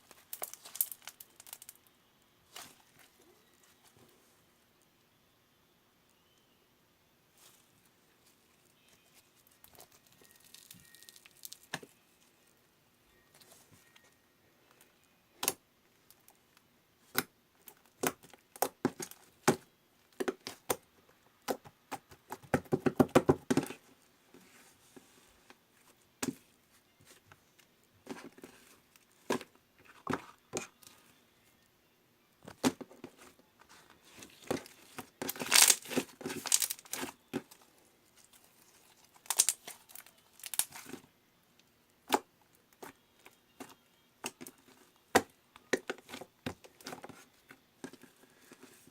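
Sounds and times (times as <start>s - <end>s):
slime crackling: 35.2s - 37.2s, 38.2s - 40.9s.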